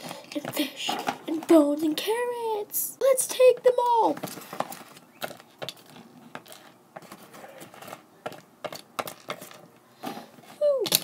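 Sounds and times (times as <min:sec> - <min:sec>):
plastic toys clicking and tapping: 0:03.3 - 0:10.2, 0:10.8 - 0:11.0.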